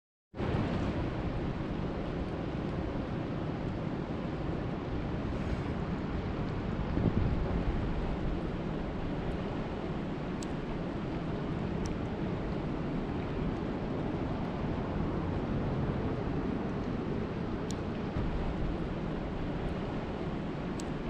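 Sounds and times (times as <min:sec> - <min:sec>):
steady rain falling: 0:00.4 - 0:21.0
faint high ticks: 0:20.7 - 0:21.0.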